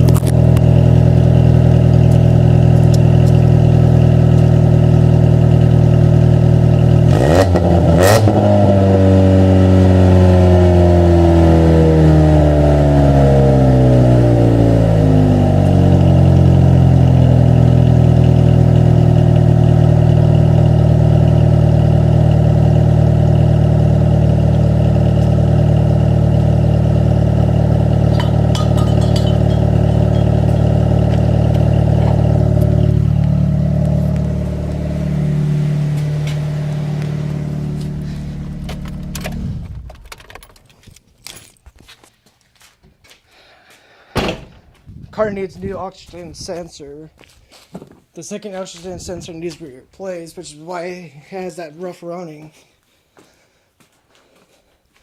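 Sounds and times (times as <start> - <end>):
car engine idling and revving: 0.0 - 41.6.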